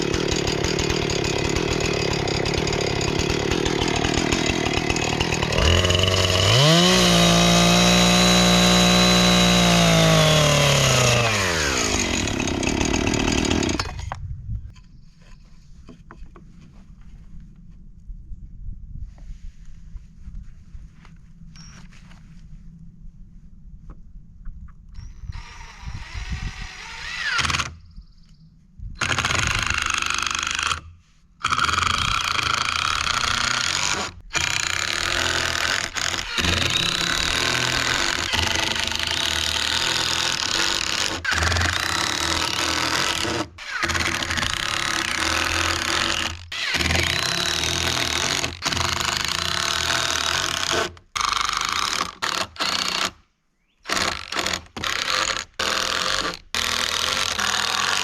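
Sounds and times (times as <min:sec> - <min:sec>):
chainsaw cutting wood: 0:00.0 - 0:14.2, 0:25.3 - 0:27.8, 0:29.0 - 0:53.2, 0:53.8 - 0:58.0.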